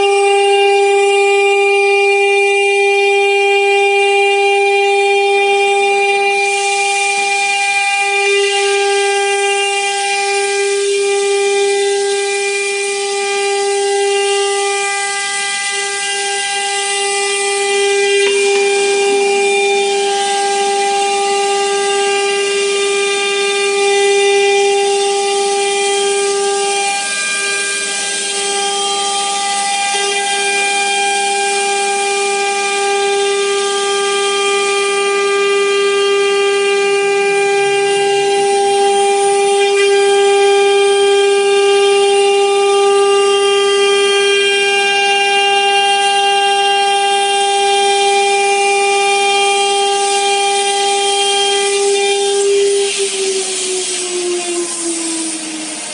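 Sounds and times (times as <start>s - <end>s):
router spindle whining: 0.0s - 55.9s
strong hiss: 5.4s - 55.9s.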